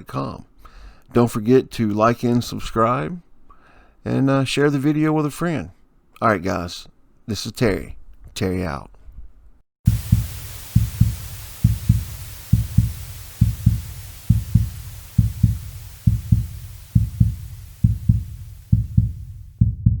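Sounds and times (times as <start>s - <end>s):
faint hiss: 9.9s - 19.6s
heartbeat thumps: 9.9s - 20.0s.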